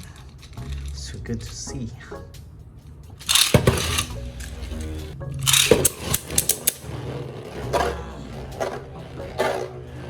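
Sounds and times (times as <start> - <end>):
background music: 0.0 - 10.0
sharp clacks: 3.2 - 4.2, 5.4 - 6.9
spinning tops whirring and clashing: 3.2 - 6.9.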